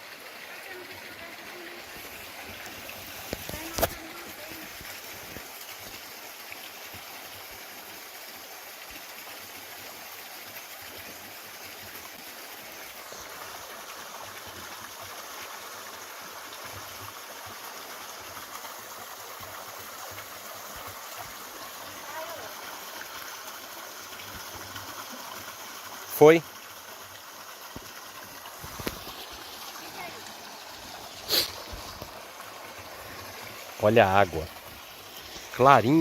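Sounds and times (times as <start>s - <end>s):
water rushing over rocks: 0.0s - 36.0s.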